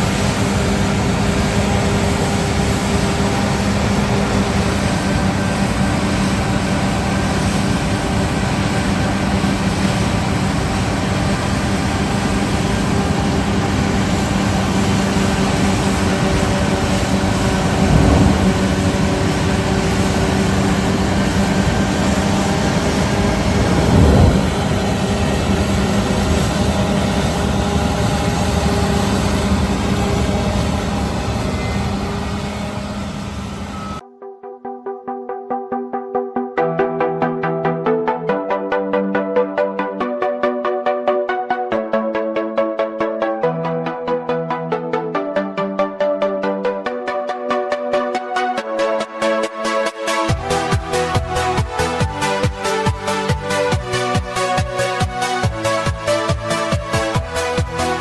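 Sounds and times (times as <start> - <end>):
combine harvester engine humming: 0.0 - 34.0, 50.2 - 58.0.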